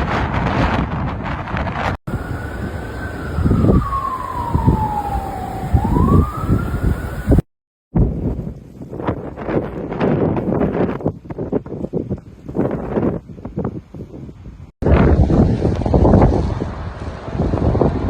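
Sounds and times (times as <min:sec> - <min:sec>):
wind noise: 0:00.0 - 0:18.0
emergency siren wailing: 0:02.1 - 0:07.5.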